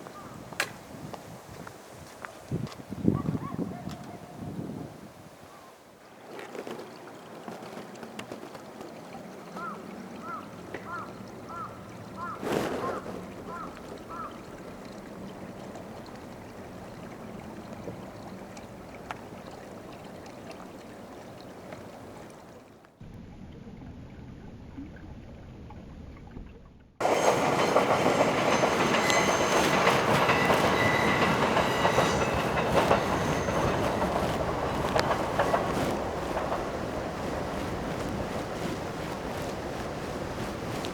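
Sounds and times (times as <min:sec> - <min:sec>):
train rumbling on rails: 0:10.5 - 0:18.9, 0:27.0 - 0:40.9
high wheel squeal: 0:27.0 - 0:40.9
train clattering: 0:27.0 - 0:40.9.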